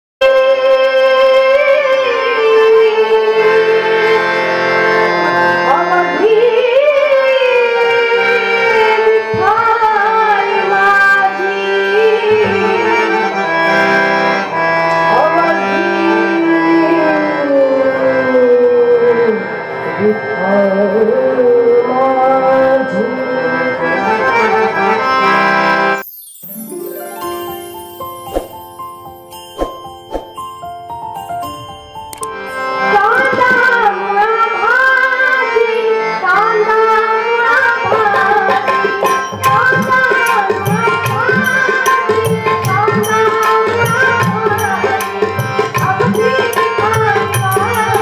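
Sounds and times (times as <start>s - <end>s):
tabla: 0.2s - 26.0s, 27.0s - 48.0s
harmonium chords: 0.2s - 48.0s
person singing: 26.4s - 28.6s.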